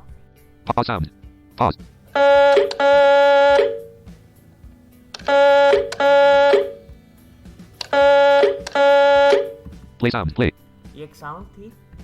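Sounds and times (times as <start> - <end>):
electronic double ring tone: 2.2 - 4.1, 5.2 - 6.9, 7.9 - 9.7.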